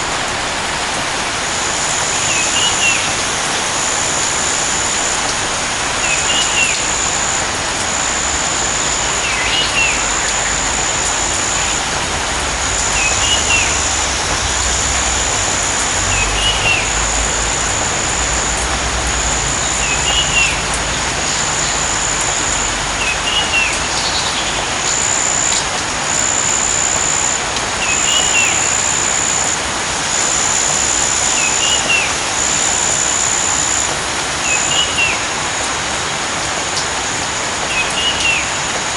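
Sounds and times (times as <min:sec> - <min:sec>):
rain hissing: 0:00.0 - 0:38.9.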